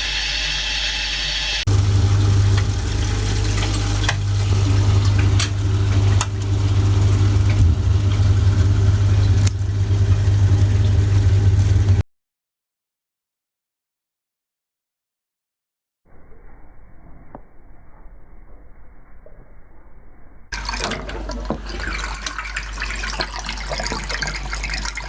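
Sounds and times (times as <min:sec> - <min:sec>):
low machine hum: 0:01.2 - 0:12.0.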